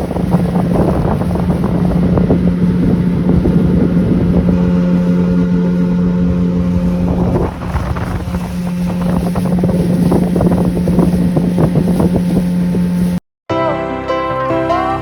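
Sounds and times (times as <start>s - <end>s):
motorboat engine humming: 0.0s - 13.2s
wind buffeting microphone: 0.0s - 13.2s.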